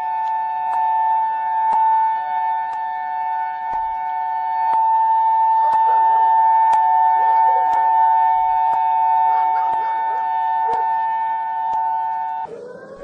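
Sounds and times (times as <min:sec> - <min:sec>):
two-note warning siren: 0:00.0 - 0:13.0
sharp ticks: 0:00.2 - 0:05.0, 0:06.6 - 0:07.0, 0:07.7 - 0:08.9, 0:09.6 - 0:12.6.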